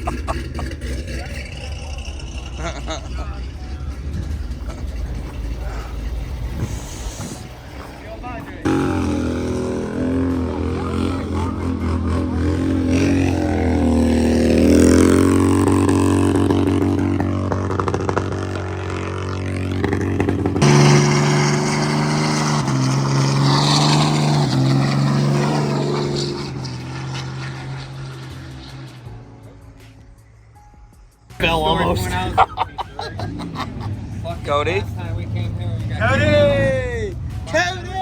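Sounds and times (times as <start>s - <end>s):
car engine revving: 0.0s - 30.6s, 31.4s - 38.0s
engine note stepping in pitch: 8.6s - 29.5s.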